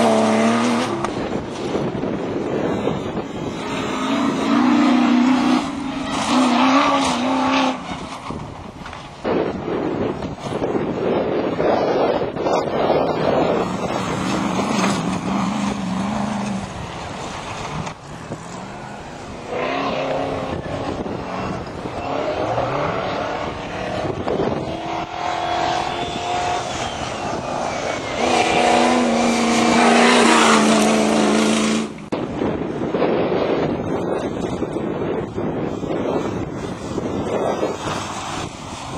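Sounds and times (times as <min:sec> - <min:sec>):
off-road engines revving: 0:00.0 - 0:38.9.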